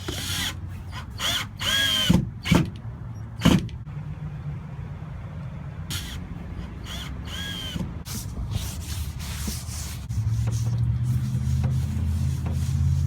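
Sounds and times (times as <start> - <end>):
constant low rumble: 0.0 - 13.0
cordless drill motor hum: 5.9 - 7.9.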